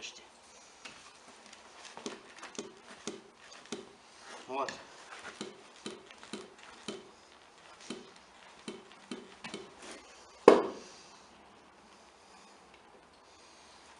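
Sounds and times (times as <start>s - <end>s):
shock absorber knocking and clicking: 1.9s - 4.0s, 5.2s - 10.8s.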